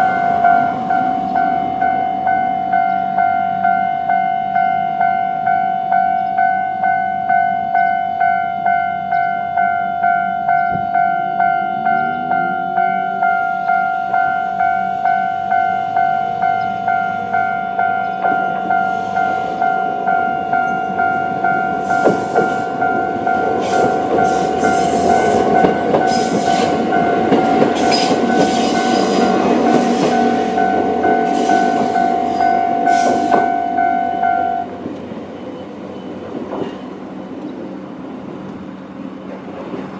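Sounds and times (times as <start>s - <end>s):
level-crossing warning bell ringing: 0.0s - 36.2s
train wheels clattering over rail joints: 21.8s - 32.0s.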